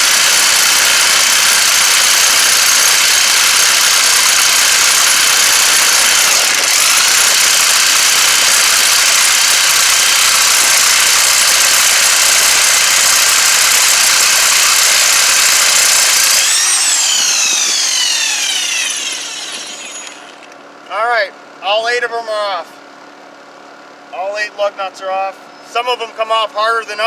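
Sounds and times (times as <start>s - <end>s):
motor winding down whine: 0.0s - 20.6s
electric impact wrench running: 0.0s - 20.8s.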